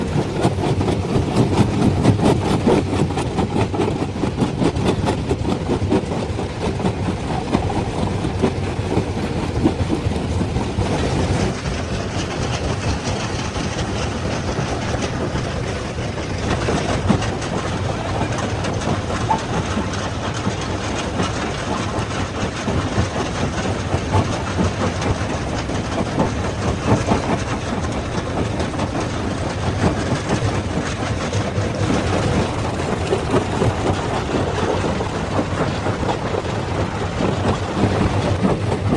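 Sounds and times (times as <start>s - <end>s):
low machine rumble: 0.0s - 38.9s.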